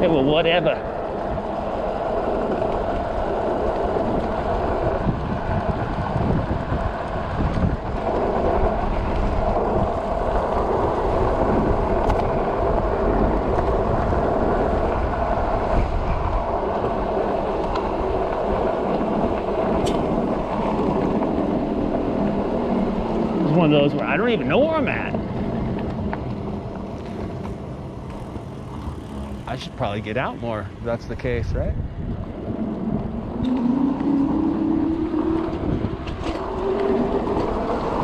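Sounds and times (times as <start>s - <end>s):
road and tyre noise: 0.0s - 38.0s
wind on microphone: 0.0s - 38.0s.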